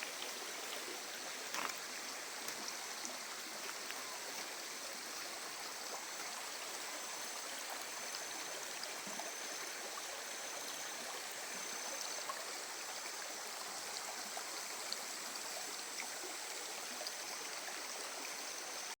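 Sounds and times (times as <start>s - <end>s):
small water splashes: 0.0s - 8.0s
river gurgling over stones: 0.0s - 19.0s.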